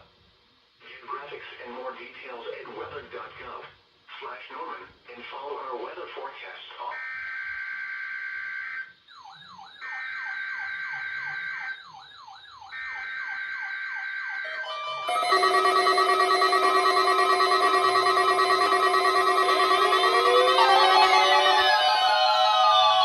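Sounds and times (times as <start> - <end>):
buzzing data bursts: 14.6 - 23.0.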